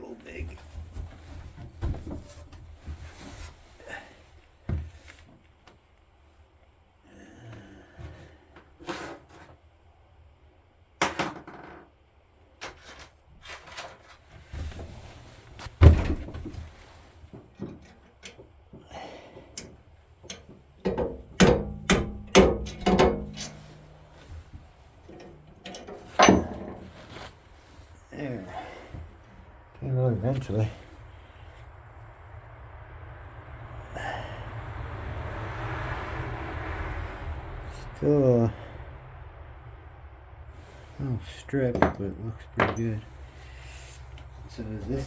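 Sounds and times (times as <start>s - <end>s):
hand tools knocking on metal: 19.6s - 24.1s
ringing metal strikes: 21.0s - 23.8s.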